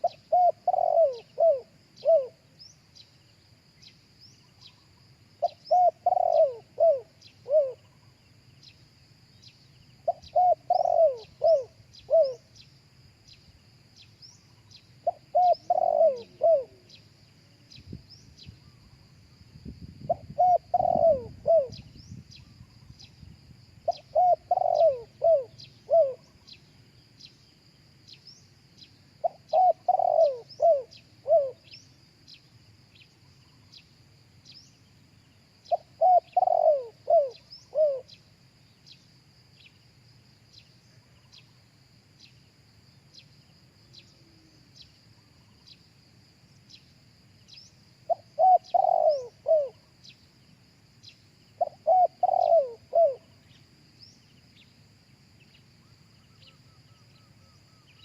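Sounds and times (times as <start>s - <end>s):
dove cooing: 0.0s - 2.5s, 5.4s - 8.0s, 10.0s - 12.5s, 15.0s - 17.0s, 20.0s - 22.0s, 23.8s - 26.4s, 29.2s - 31.7s, 35.7s - 38.1s, 48.1s - 49.9s, 51.6s - 53.5s.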